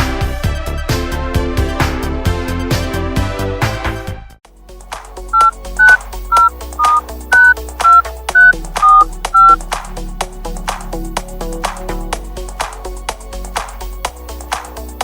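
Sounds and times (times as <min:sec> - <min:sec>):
touch-tone keypad beeps: 0:05.4 - 0:09.6.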